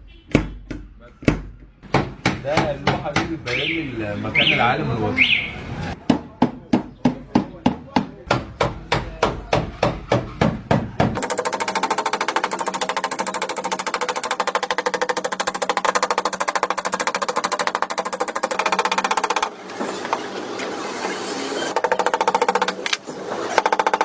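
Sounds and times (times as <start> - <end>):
rapid mechanical rattle: 11.2 - 19.6.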